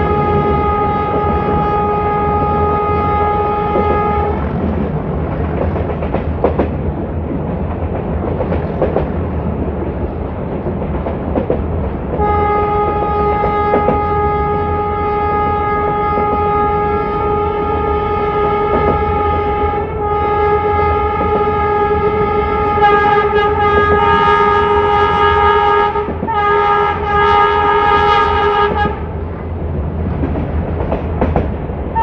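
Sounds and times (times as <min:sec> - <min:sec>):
locomotive horn blast: 0:00.0 - 0:04.6, 0:12.2 - 0:29.1
train running rumble: 0:00.0 - 0:32.0.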